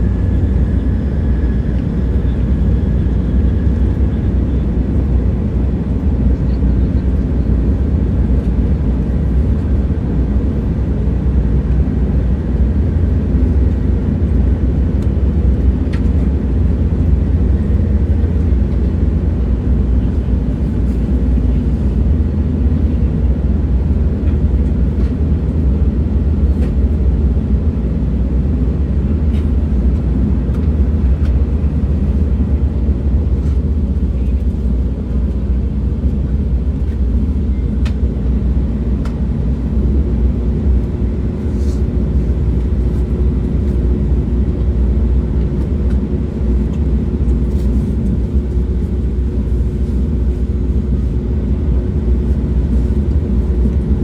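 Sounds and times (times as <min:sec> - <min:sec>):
moving train rumble: 0:00.0 - 0:54.0.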